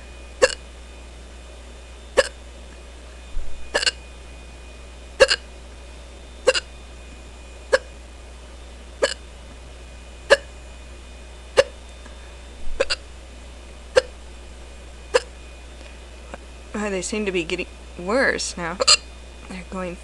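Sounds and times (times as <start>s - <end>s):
woman hiccuping: 2.2s - 2.4s, 3.8s - 4.0s, 5.2s - 5.4s, 6.5s - 6.7s, 11.6s - 11.8s, 12.8s - 13.0s, 18.8s - 19.0s.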